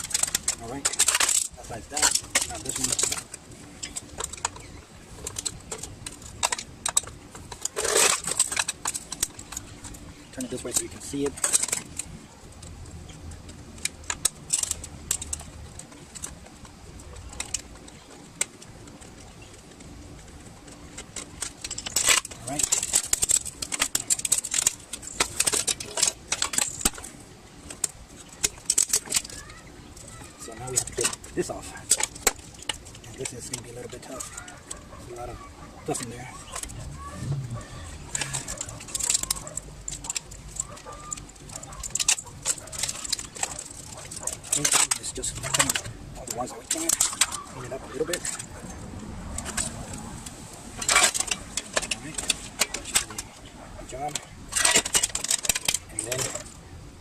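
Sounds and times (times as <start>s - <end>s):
rattling scrape: 0.0s - 11.9s
tools tapping metal and plastic: 0.0s - 12.7s, 13.4s - 36.8s, 38.1s - 56.6s.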